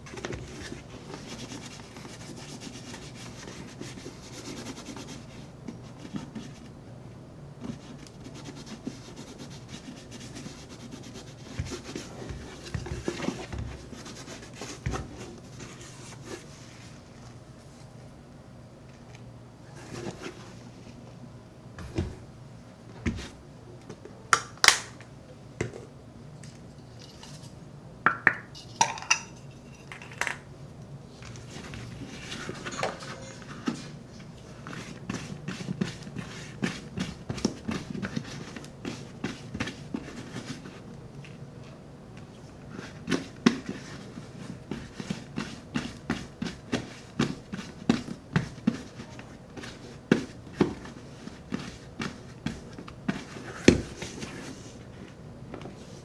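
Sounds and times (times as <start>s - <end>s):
items clinking: 32.3s - 33.9s.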